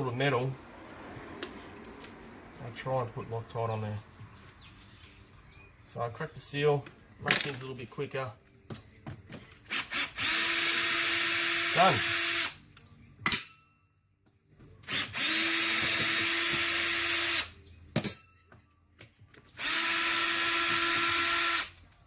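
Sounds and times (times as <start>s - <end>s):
cordless drill spinning out bolts: 9.7s - 12.6s, 14.8s - 17.5s, 19.6s - 21.8s.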